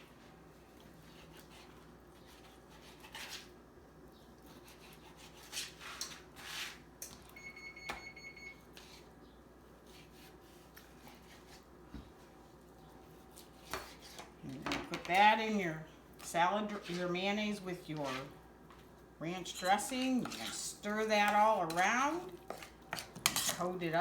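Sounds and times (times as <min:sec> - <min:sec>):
knife cutting on a cutting board: 0:01.0 - 0:03.5, 0:04.4 - 0:06.8, 0:09.8 - 0:11.7, 0:13.2 - 0:14.3.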